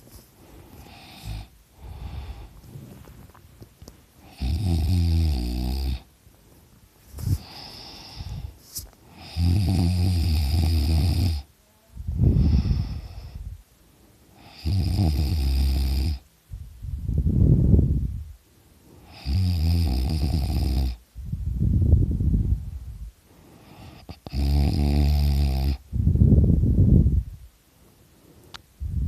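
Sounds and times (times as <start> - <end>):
quiet breaths: 0.0 - 27.0, 27.6 - 29.0
loud rattling snores: 4.2 - 6.1, 9.1 - 11.5, 14.4 - 16.2, 19.1 - 21.0, 23.8 - 25.8.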